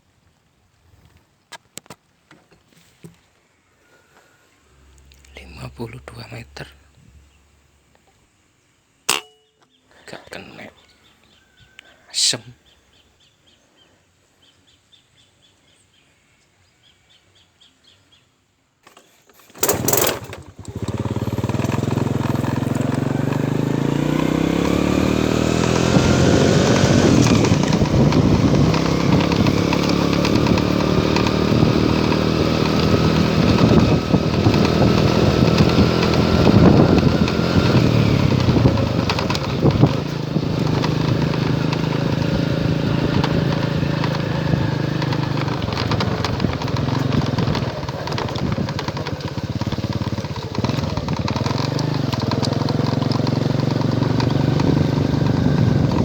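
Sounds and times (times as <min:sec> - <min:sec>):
engine starting and revving: 0:03.9 - 0:07.6, 0:18.8 - 0:56.0.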